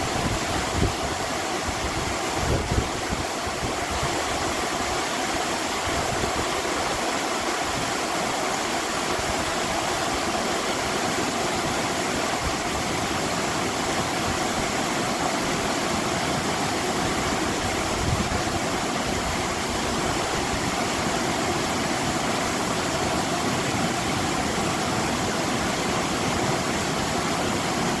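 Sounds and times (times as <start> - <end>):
stream water flowing: 0.0 - 28.0.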